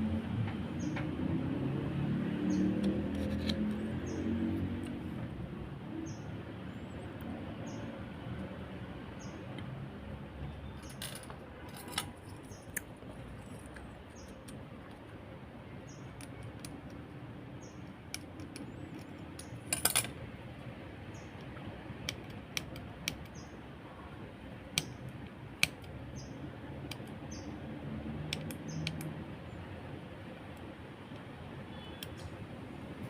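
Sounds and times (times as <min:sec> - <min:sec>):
sharp clicks: 0:21.4 - 0:23.5, 0:24.7 - 0:26.0, 0:28.2 - 0:29.2.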